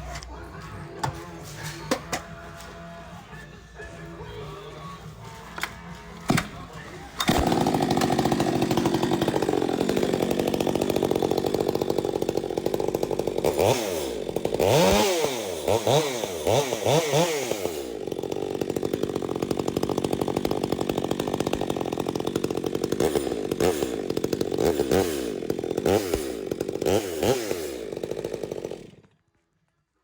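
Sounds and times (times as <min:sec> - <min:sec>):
chainsaw revving: 0:07.2 - 0:29.1.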